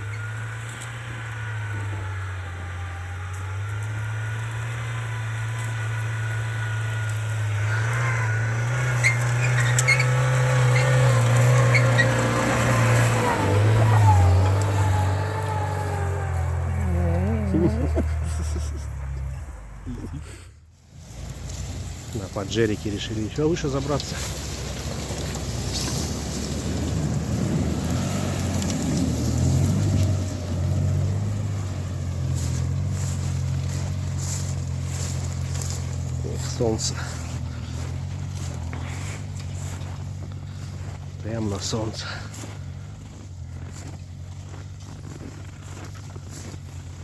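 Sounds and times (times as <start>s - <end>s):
off-road vehicle engine under load: 0.0s - 47.0s
short high squeaks: 7.5s - 17.9s.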